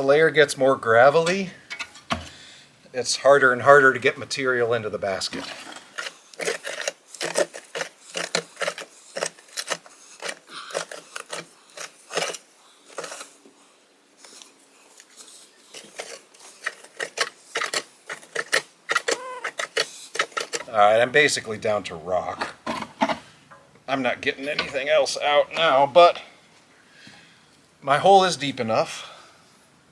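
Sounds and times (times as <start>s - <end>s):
auger blades scraping stones: 5.0s - 13.4s, 15.0s - 21.0s, 22.1s - 23.7s, 24.3s - 25.8s.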